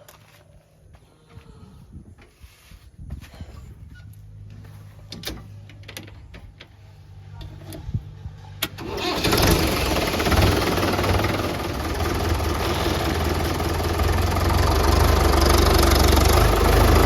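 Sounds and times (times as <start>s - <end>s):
diesel engine running: 5.7s - 17.0s.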